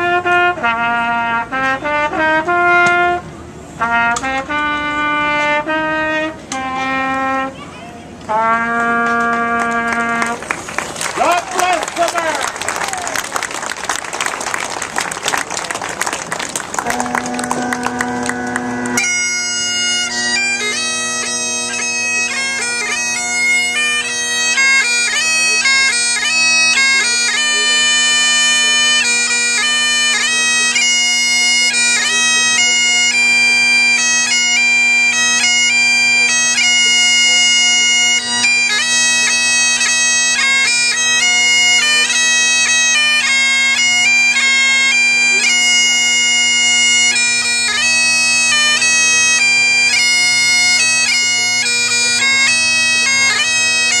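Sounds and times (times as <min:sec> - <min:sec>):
bagpipe chanter tune: 0:00.0 - 0:07.5, 0:16.8 - 0:54.0
bagpipe drones: 0:00.0 - 0:07.6, 0:08.2 - 0:10.4, 0:16.7 - 0:54.0
applause: 0:09.3 - 0:18.7.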